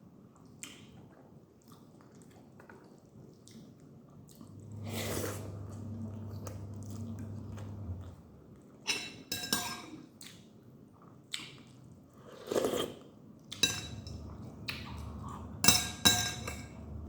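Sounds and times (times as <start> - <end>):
dishware clinking: 8.9 - 10.0, 13.6 - 14.4, 15.1 - 16.9.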